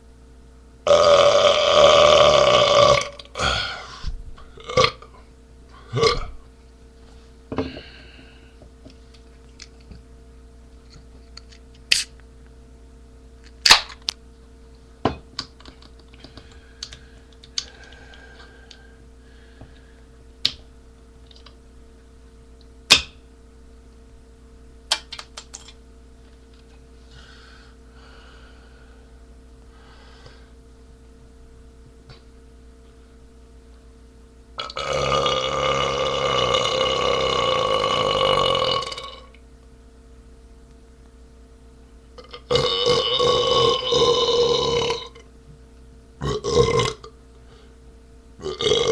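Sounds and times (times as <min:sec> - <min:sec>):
steady hum: 0:00.0 - 0:48.9.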